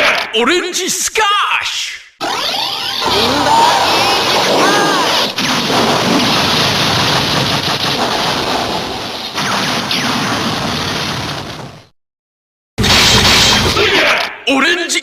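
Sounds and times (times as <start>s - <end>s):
dense crashing rush: 3.1s - 9.2s.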